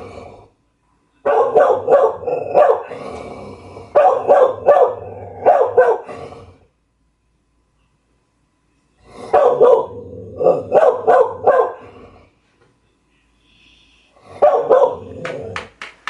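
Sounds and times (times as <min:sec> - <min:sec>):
dog barking: 0:01.2 - 0:02.9, 0:04.0 - 0:06.1, 0:09.3 - 0:11.8, 0:14.4 - 0:15.5.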